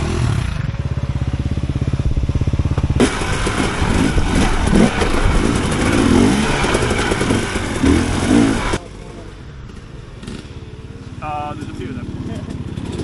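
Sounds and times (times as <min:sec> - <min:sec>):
dirt bike engine revving: 0:00.0 - 0:09.0, 0:09.6 - 0:13.0
loud rushing noise: 0:01.5 - 0:08.8.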